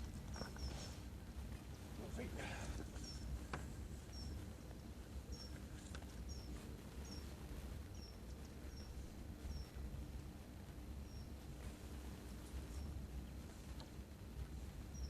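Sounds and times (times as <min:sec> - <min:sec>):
small bird calling: 0:00.0 - 0:09.9, 0:10.9 - 0:11.8, 0:14.6 - 0:15.0.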